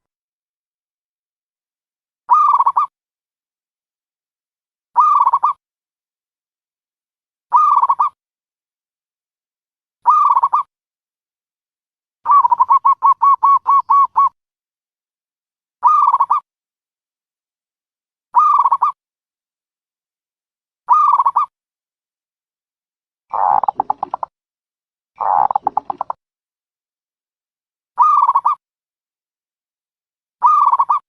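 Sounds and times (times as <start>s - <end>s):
dove cooing: 12.3s - 14.4s, 23.3s - 24.3s, 25.2s - 26.1s.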